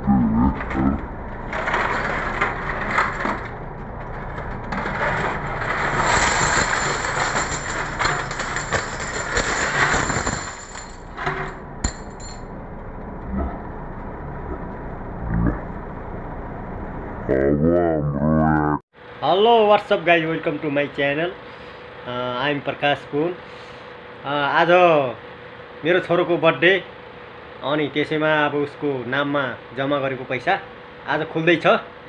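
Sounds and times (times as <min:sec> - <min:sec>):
coins clinking and rattling: 0:05.1 - 0:12.5.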